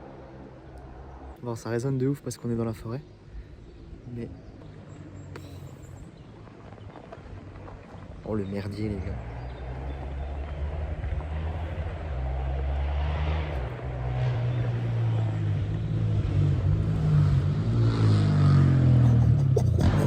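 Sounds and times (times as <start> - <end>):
distant motorcycle engine revving: 9.0 - 20.0.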